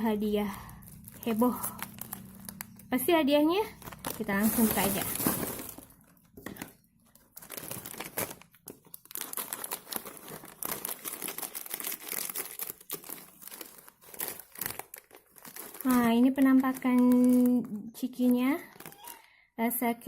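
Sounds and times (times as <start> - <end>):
plastic snack packet crinkling: 0.2 - 19.4.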